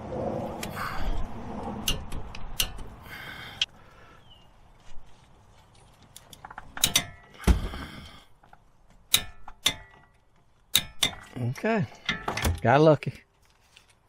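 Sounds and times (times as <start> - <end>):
metal tools clicking and knocking: 1.8 - 3.0, 6.1 - 7.4, 9.1 - 12.7.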